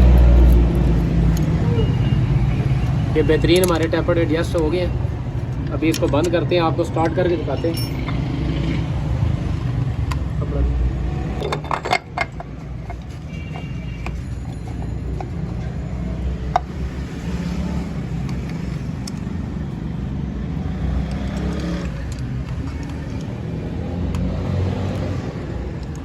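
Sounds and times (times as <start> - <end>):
low traffic rumble: 0.0 - 26.0
metallic clinks and taps: 7.0 - 8.4.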